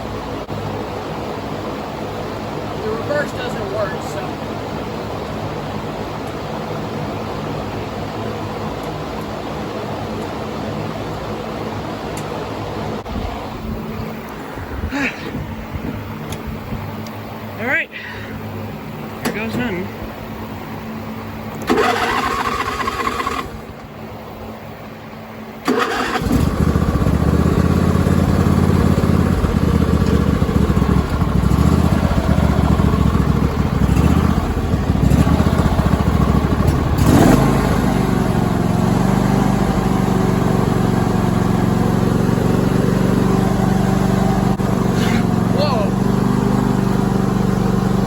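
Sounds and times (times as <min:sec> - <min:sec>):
lawn tractor engine running: 0:18.6 - 0:24.6, 0:25.6 - 0:48.0.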